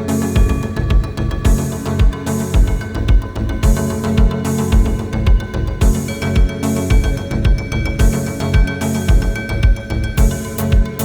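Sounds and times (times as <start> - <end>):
music with heavy steady beat: 0.0 - 11.0.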